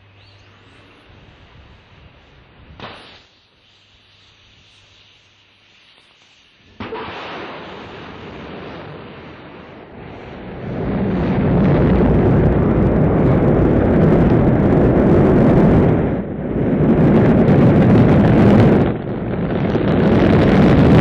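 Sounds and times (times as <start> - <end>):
rocket engines rumbling: 6.7 - 21.0.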